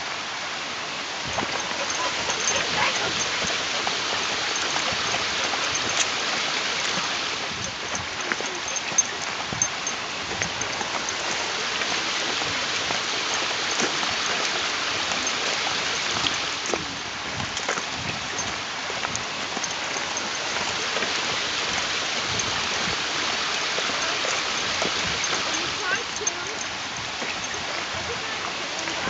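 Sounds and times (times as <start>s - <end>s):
running water: 0.0s - 29.0s.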